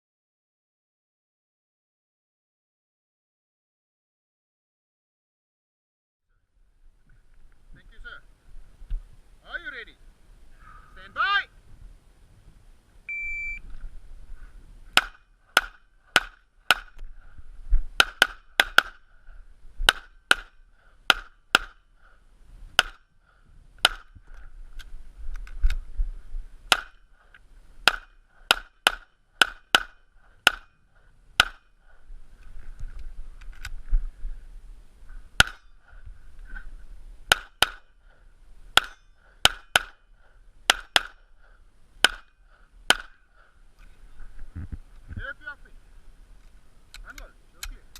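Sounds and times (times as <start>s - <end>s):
shot timer beep: 13.1s - 13.6s.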